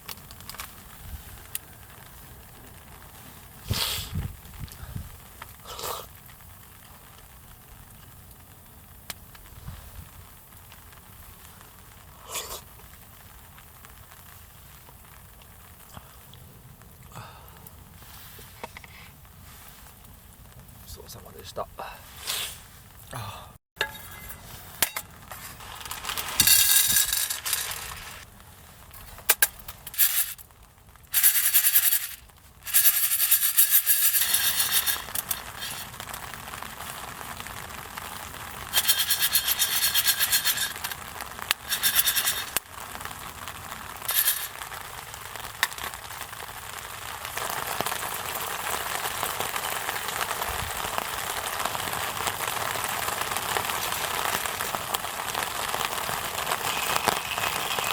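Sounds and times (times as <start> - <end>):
rain falling: 0.0 - 57.9
clinking and rustling: 23.8 - 28.2, 29.0 - 30.4, 31.1 - 36.0, 38.7 - 42.6, 44.0 - 44.7.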